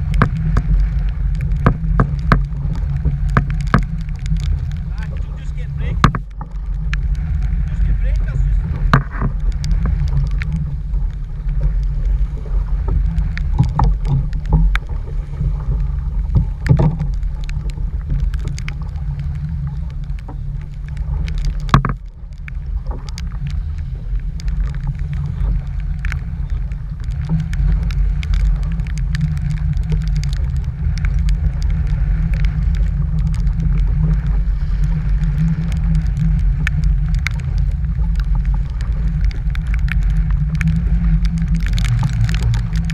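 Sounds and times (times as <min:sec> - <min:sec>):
wind buffeting microphone: 0:00.0 - 0:42.9
sharp taps: 0:05.0 - 0:06.5.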